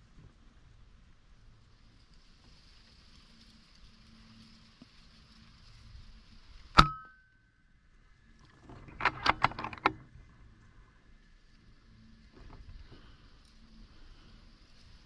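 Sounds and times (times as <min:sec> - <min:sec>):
sharp clicks and knocks: 0:08.6 - 0:10.1.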